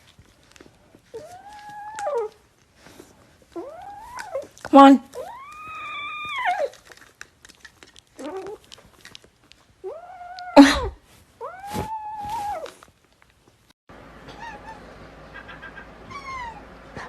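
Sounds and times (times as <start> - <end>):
cat meowing: 5.2 - 6.8, 9.8 - 12.7, 14.3 - 14.8, 15.4 - 17.0.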